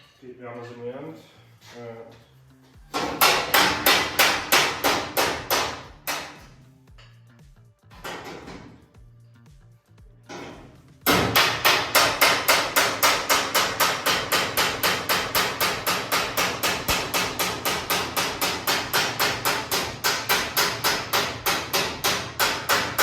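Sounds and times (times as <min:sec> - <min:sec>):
hammer beating steel panel: 0:02.9 - 0:06.5, 0:10.3 - 0:23.0.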